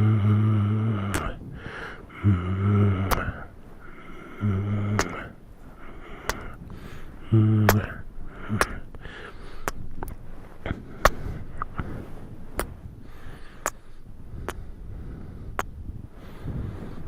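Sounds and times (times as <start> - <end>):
person humming: 0.0 - 1.4, 2.1 - 6.6, 7.2 - 9.0
soft breaths: 0.0 - 17.0.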